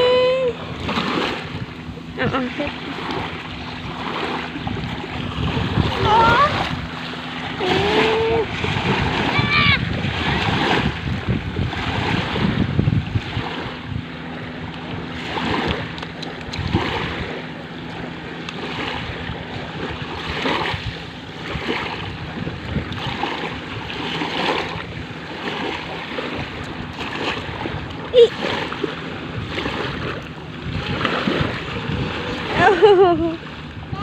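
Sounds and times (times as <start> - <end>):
sea waves washing on beach: 0.0 - 34.0
wind buffeting the microphone: 0.0 - 34.0.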